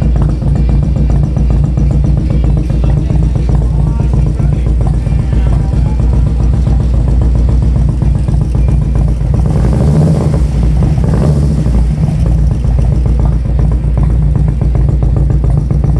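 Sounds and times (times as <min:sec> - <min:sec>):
motorcycle engine idling and revving: 0:00.0 - 0:15.9.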